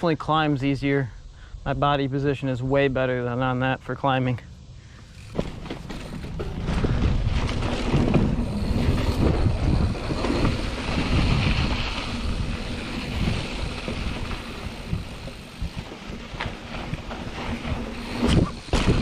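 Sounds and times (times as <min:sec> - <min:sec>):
tyres hissing on dirt: 0:00.2 - 0:19.0
bike knocks and rattles: 0:05.1 - 0:19.0
wind buffeting microphone: 0:05.2 - 0:19.0.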